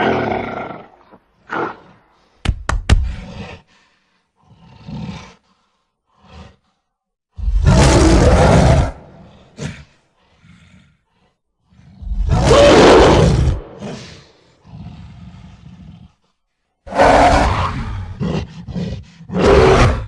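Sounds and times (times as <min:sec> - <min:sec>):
giant ape roaring: 0:00.0 - 0:02.0, 0:07.4 - 0:10.9, 0:11.9 - 0:16.2, 0:16.9 - 0:20.0.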